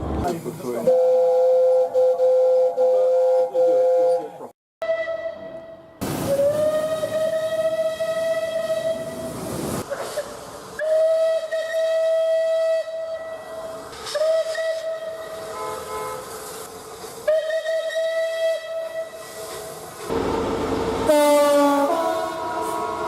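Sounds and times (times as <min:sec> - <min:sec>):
train whistle blasts: 0:00.9 - 0:09.3, 0:10.8 - 0:16.4, 0:17.2 - 0:19.6, 0:21.1 - 0:23.0.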